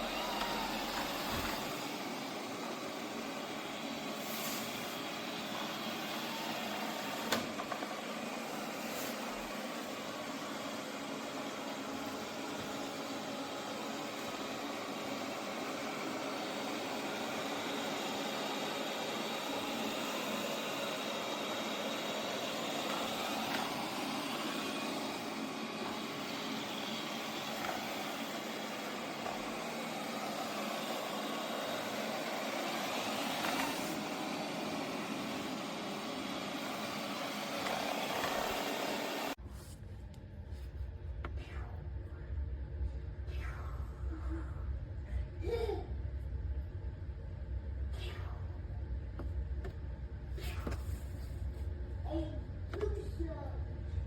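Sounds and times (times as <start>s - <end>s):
robot vacuum fan whirring: 0.0s - 39.4s.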